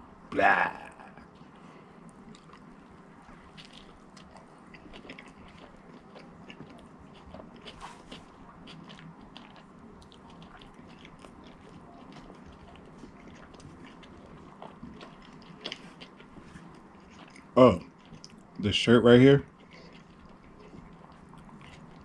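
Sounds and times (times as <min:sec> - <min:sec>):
chewing and biting food: 0:01.0 - 0:18.6, 0:19.4 - 0:22.0.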